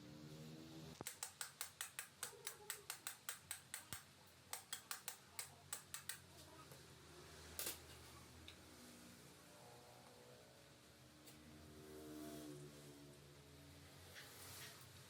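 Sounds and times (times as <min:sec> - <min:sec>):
rapid sharp clicks: 0:01.0 - 0:06.2.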